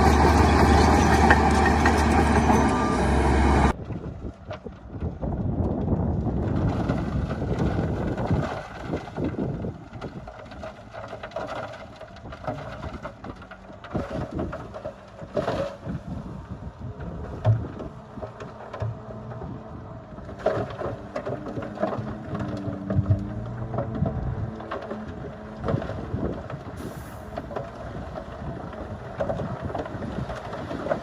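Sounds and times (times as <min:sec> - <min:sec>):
knocks and clatter of dirt and metal: 0:00.0 - 0:03.0, 0:03.6 - 0:31.0
heavy diesel machinery running: 0:00.0 - 0:03.8.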